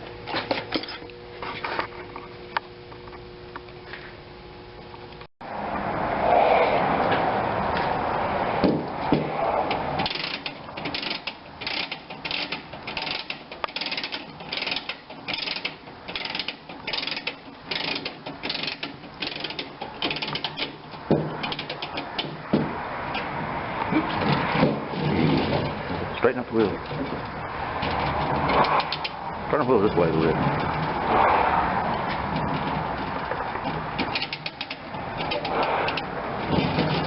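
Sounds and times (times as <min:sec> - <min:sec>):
handling noise: 0:07.0 - 0:37.0
wind-up toy ratchet clicking: 0:10.0 - 0:20.7.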